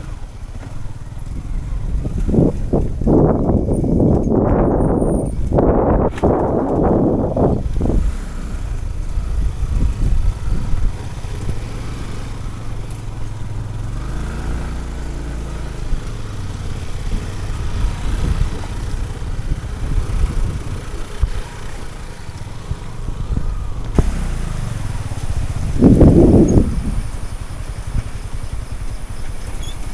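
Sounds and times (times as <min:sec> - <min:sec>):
motorcycle engine running: 0:00.0 - 0:29.9
wind rumble on microphone: 0:00.0 - 0:29.9.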